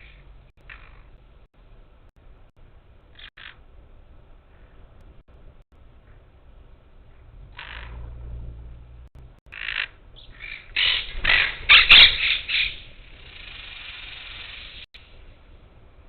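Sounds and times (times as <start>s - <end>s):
parakeets squawking: 7.5s - 8.2s, 9.5s - 14.8s.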